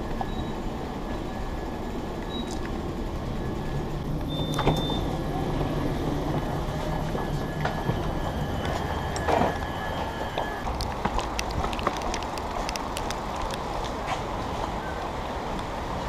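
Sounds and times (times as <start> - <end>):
vehicle interior rumble: 0.0 - 16.0
short high beep: 4.3 - 5.1.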